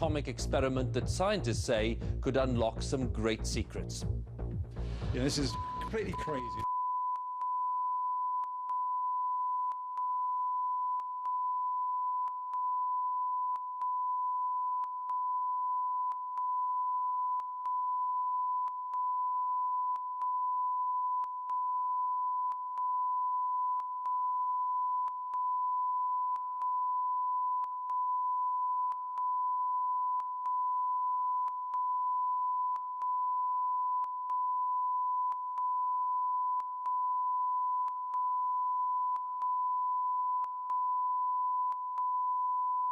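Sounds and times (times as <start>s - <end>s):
continuous electronic beep tone: 5.0s - 42.9s.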